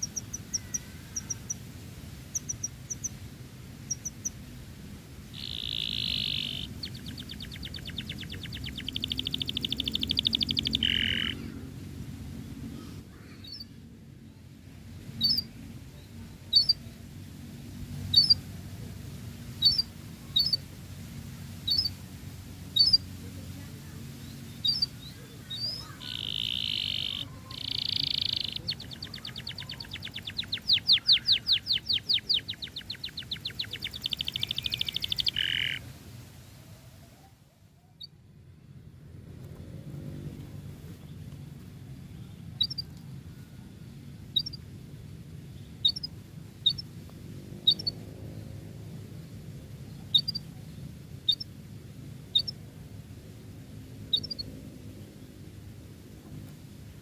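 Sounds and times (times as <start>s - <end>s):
canary singing trills and chirps: 0.0s - 4.5s, 5.3s - 11.6s, 13.2s - 13.8s, 15.2s - 16.9s, 18.0s - 18.4s, 19.6s - 20.6s, 21.6s - 22.0s, 22.7s - 23.1s, 24.2s - 35.8s, 42.3s - 43.1s, 44.2s - 44.7s, 45.6s - 46.9s, 47.6s - 48.0s, 49.8s - 51.6s, 52.3s - 52.6s, 54.1s - 54.5s.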